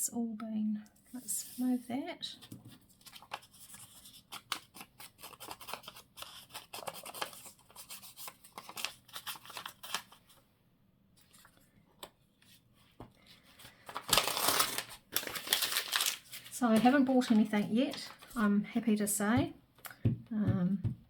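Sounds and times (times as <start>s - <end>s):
paper rustling: 2.4s - 10.4s, 11.2s - 18.5s.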